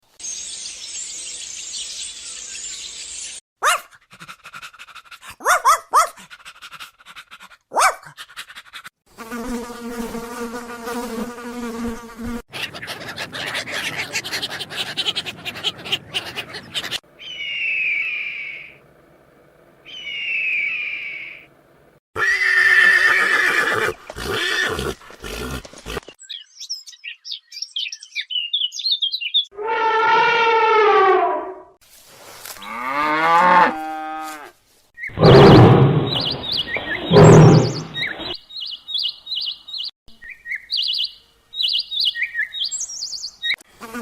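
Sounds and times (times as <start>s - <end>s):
sharp sweeping yelps: 7.7s - 8.6s
insect buzzing: 9.1s - 12.5s, 43.7s - 44.0s
animal calls falling in pitch: 29.6s - 31.6s
animal hissing: 37.1s - 38.0s.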